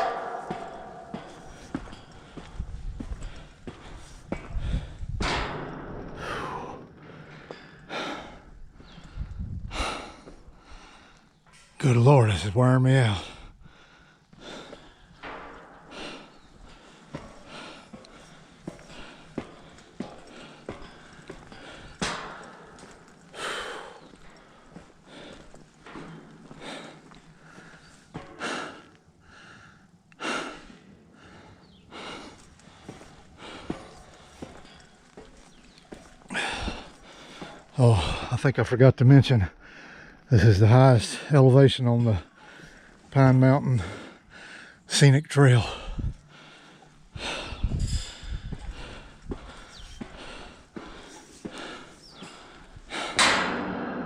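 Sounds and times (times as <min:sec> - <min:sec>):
light footfalls on steps: 0:00.0 - 0:05.2, 0:13.7 - 0:29.5, 0:31.2 - 0:38.3, 0:46.0 - 0:53.2
man breathing hard: 0:00.0 - 0:11.6, 0:13.2 - 0:38.3, 0:39.6 - 0:40.3, 0:42.2 - 0:43.1, 0:43.7 - 0:44.9, 0:45.7 - 0:54.0.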